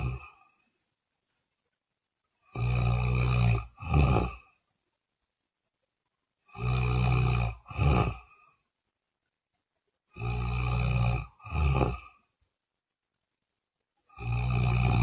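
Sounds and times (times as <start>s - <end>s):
woman snoring: 0.0s - 0.7s, 2.4s - 4.5s, 6.5s - 8.5s, 10.1s - 12.2s, 14.1s - 15.0s.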